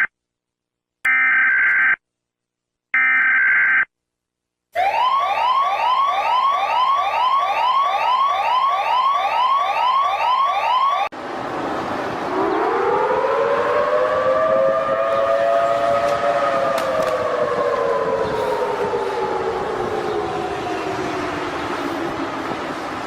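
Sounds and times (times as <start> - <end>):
electronic whooping siren: 4.8 - 11.1, 12.3 - 22.3
air-raid siren wailing: 4.8 - 23.0.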